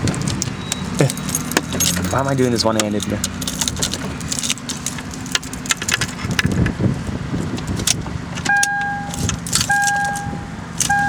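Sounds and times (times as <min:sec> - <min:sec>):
keys jangling: 0:00.0 - 0:06.8, 0:07.4 - 0:11.0
handling clicks and rustles: 0:00.0 - 0:11.0
car warning chime beeping: 0:00.4 - 0:02.0, 0:08.5 - 0:11.0.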